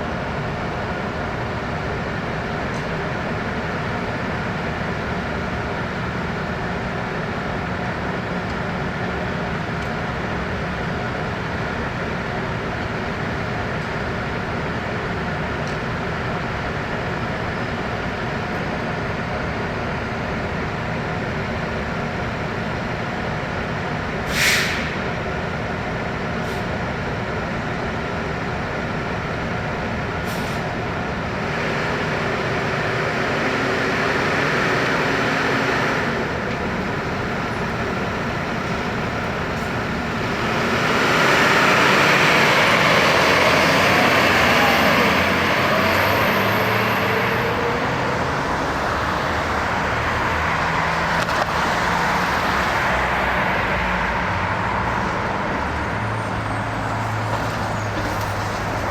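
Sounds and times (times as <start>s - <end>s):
brief sharp hiss: 24.3s - 25.1s
fire engine diesel engine running: 34.4s - 58.9s.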